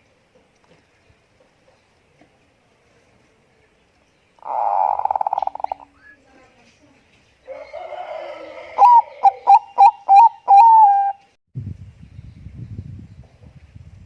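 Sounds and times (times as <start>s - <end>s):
dove cooing: 4.4s - 5.9s, 7.5s - 11.2s.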